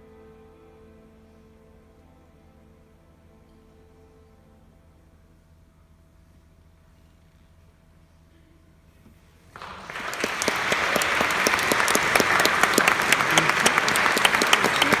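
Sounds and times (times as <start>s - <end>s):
audience applauding: 9.6s - 15.0s.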